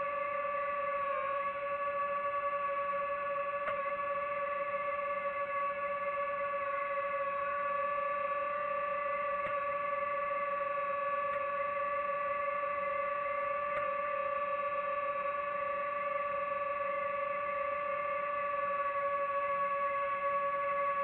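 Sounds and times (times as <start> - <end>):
faint ticks: 13.7 - 13.9.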